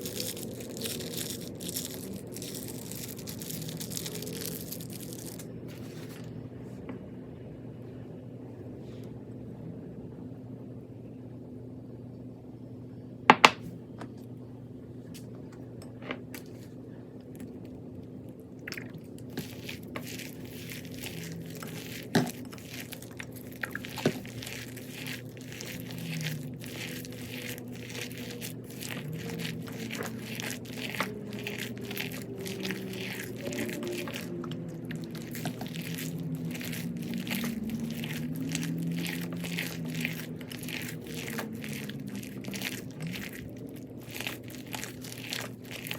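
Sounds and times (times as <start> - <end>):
crunchy slime crackling: 0.0 - 6.3, 18.6 - 45.9.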